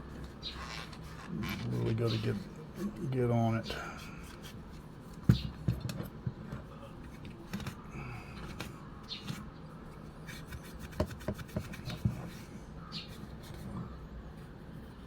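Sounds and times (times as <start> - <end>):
cloth rubbing and scraping: 0.4 - 3.0.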